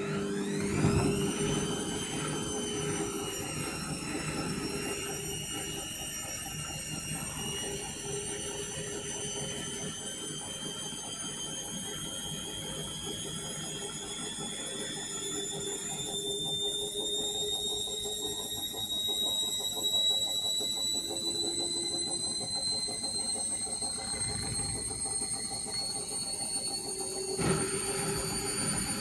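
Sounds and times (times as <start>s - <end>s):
washing machine motor whine: 0.0s - 29.0s
drum rumble: 24.0s - 25.4s.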